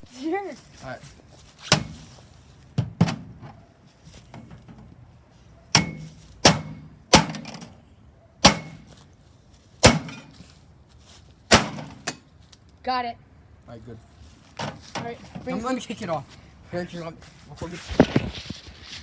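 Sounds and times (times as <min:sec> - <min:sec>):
bat striking microwave oven: 0:05.8 - 0:07.6, 0:08.4 - 0:08.8, 0:09.8 - 0:10.2, 0:11.5 - 0:12.1.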